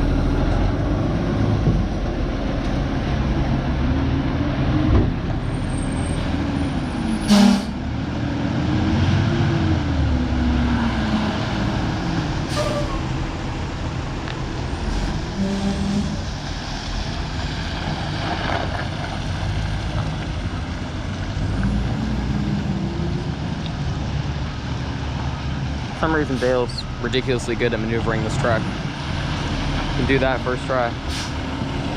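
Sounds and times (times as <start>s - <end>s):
air brakes hissing: 12.5s - 13.0s, 31.0s - 31.4s.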